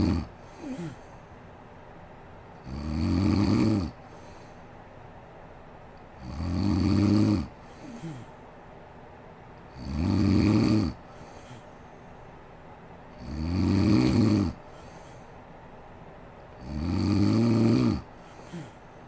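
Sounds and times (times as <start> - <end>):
woman snoring: 0.0 - 1.1, 2.6 - 4.0, 6.2 - 8.3, 9.7 - 11.0, 13.2 - 14.6, 16.6 - 18.8.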